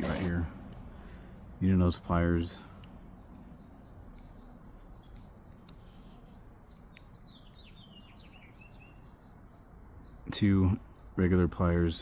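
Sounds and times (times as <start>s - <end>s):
bird chirping: 0.0s - 12.0s.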